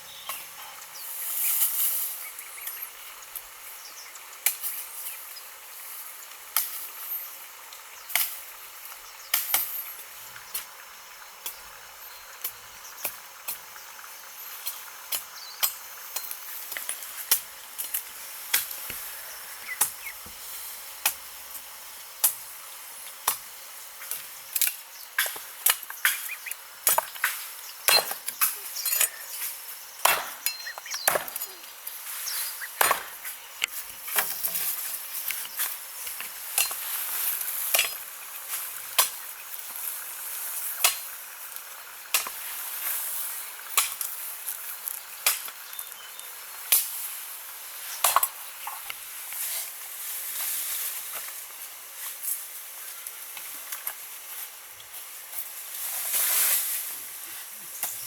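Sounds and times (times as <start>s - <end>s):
high-pitched background hiss: 0.0s - 58.0s
hand tool striking wood: 19.8s - 20.4s, 24.1s - 29.2s, 30.0s - 31.5s, 32.8s - 34.6s.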